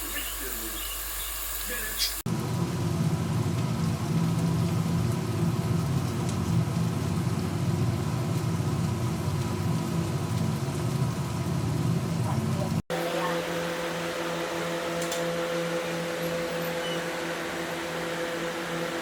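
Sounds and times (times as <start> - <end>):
potatoes sizzling in hot oil: 0.0 - 12.8.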